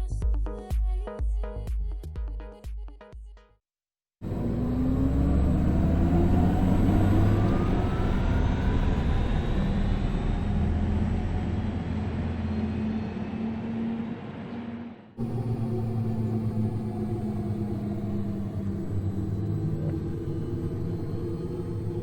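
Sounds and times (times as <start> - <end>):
electric motor whine: 4.2 - 11.1, 15.2 - 22.0.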